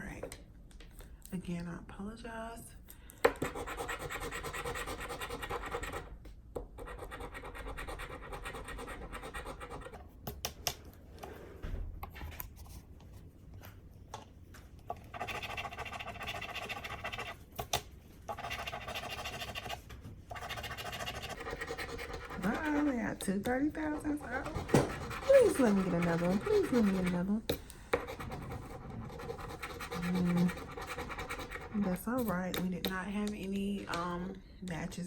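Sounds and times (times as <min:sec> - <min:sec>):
scratching lottery ticket coating: 0:15.0 - 0:17.4, 0:18.3 - 0:27.4, 0:28.0 - 0:32.2.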